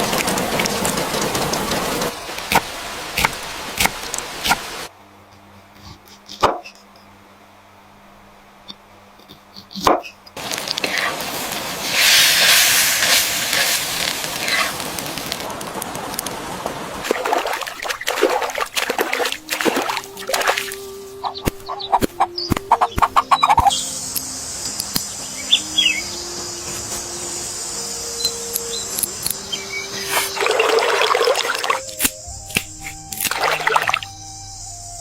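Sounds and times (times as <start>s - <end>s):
noisy rustle: 0.0s - 4.9s, 10.4s - 21.2s, 23.7s - 31.0s
steady high hiss: 0.0s - 5.2s, 10.4s - 35.0s
soft background music: 18.6s - 35.0s
bird chirps: 19.4s - 35.0s.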